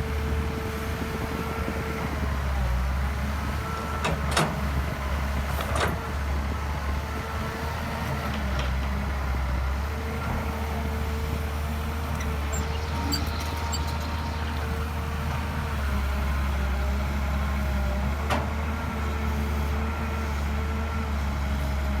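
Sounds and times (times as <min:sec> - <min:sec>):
excavator diesel engine running: 0:00.0 - 0:22.0
hydraulic whine: 0:12.1 - 0:15.6.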